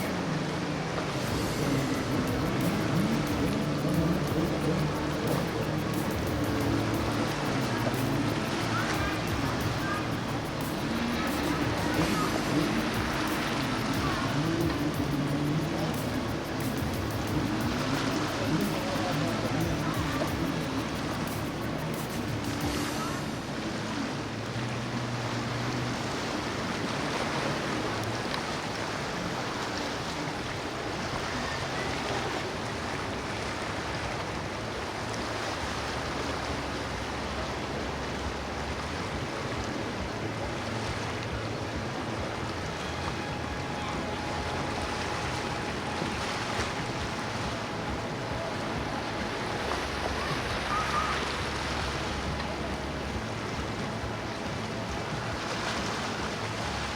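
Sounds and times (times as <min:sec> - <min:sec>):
boat engines humming: 0:00.0 - 0:56.9
waves washing: 0:00.0 - 0:56.9
wind buffeting microphone: 0:36.5 - 0:56.9.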